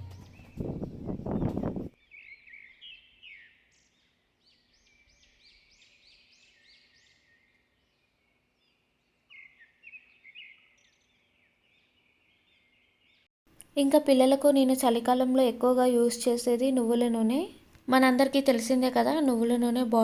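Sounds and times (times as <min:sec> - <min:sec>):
small birds chirping: 0:00.0 - 0:13.3.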